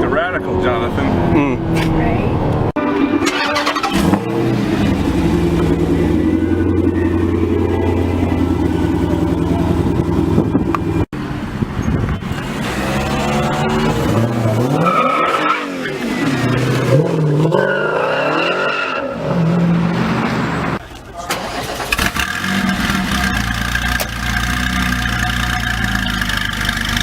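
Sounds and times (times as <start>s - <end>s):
car engine revving: 0.0s - 11.1s, 11.9s - 27.0s
car engine running steadily: 3.8s - 14.7s, 19.8s - 27.0s.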